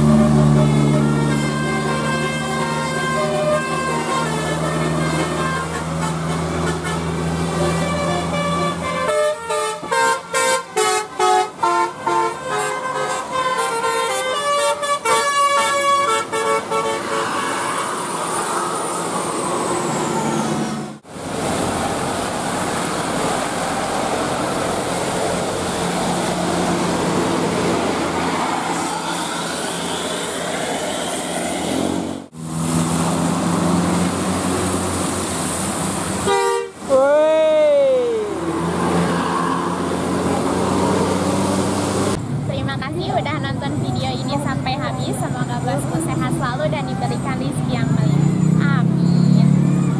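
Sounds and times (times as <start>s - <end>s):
multi-tone bus air horn tune: 0.0s - 18.8s, 36.2s - 37.0s
vehicle noise: 0.0s - 49.9s.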